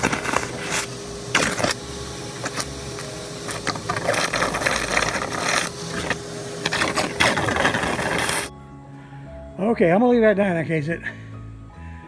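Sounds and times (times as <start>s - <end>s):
electric motor humming: 0.0s - 8.5s.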